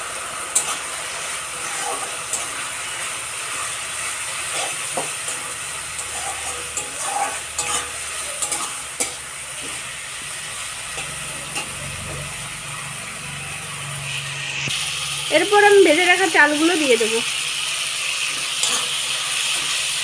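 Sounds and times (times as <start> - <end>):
food sizzling in oil: 0.0 - 20.0
spatula scraping and knocking pan: 0.5 - 12.4, 18.3 - 20.0.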